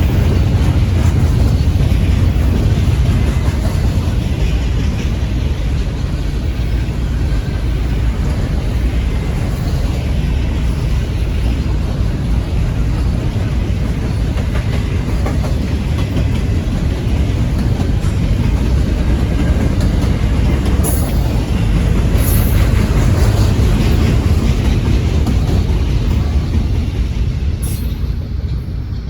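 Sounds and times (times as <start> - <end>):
freight train wheels rumbling: 0.0 - 29.0.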